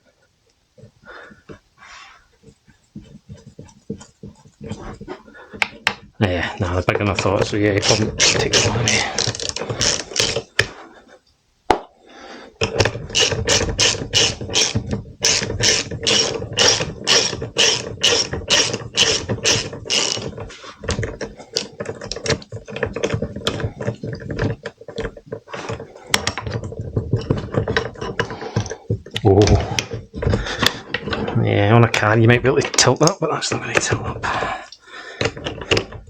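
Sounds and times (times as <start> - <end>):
socket ratchet clicking: 7.7 - 10.5, 12.6 - 20.4.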